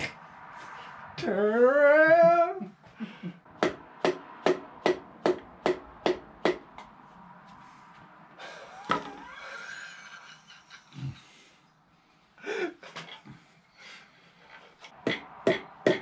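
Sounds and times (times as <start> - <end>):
hammer knocks and taps: 3.6 - 6.9, 15.0 - 16.0.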